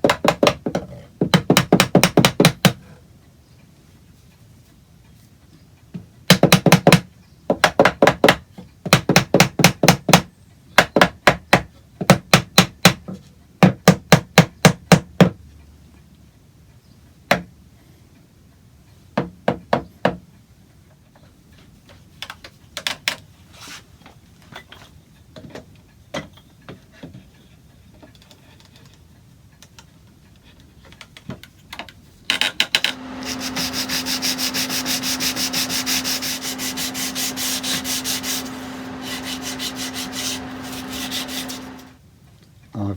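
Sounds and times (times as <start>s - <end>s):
sharp knocking on wood: 1.2s - 2.6s
power sander humming: 32.8s - 42.0s.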